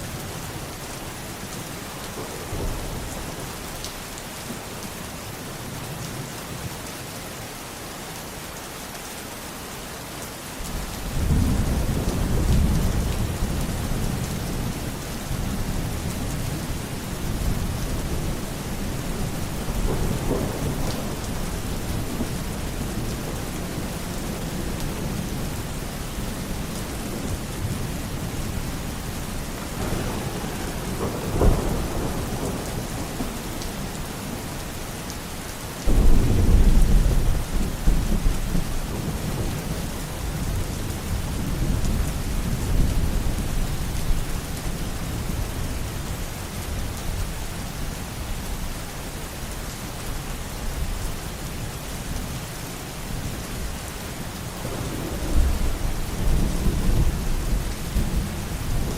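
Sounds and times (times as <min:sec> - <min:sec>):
rain falling: 0:00.0 - 0:58.9
thunder rumbling: 0:10.7 - 0:43.5, 0:53.6 - 0:58.9
thunder crack: 0:17.3 - 0:23.2, 0:29.6 - 0:34.6, 0:35.9 - 0:37.5, 0:54.5 - 0:58.9.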